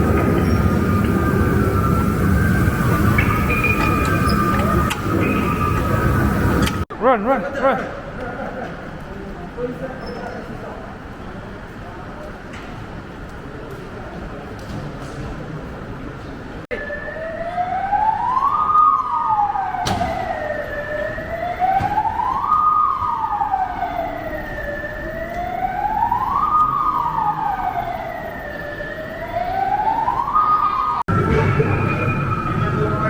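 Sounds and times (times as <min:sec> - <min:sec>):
wailing siren: 0:00.0 - 0:06.9, 0:16.7 - 0:33.0.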